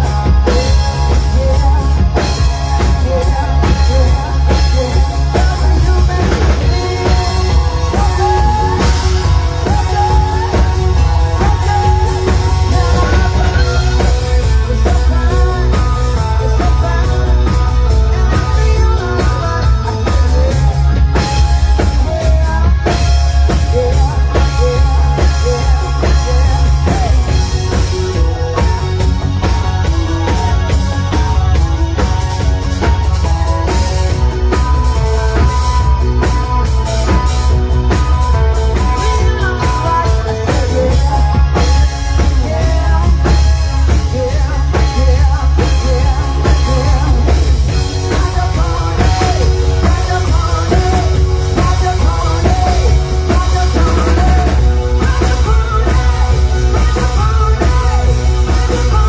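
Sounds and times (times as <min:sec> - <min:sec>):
rock band playing loud: 0:00.0 - 0:59.0.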